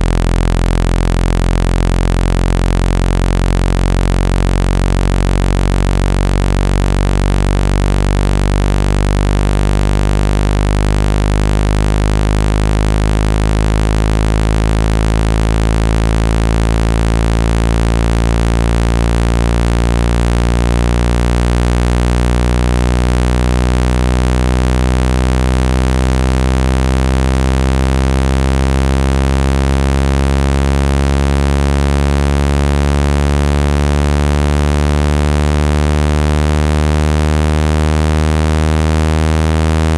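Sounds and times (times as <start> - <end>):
low buzzing tone: 0.0 - 39.9.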